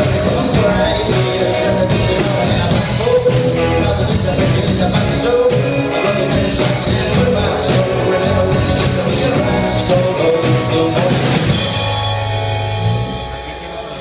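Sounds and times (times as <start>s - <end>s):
drum kit: 0.0s - 14.0s
rock band playing: 0.0s - 14.0s
held guitar chord ringing: 11.5s - 14.0s.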